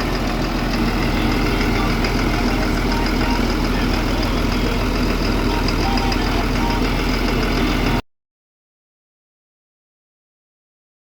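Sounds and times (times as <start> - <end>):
diesel engine idling: 0.0 - 8.0.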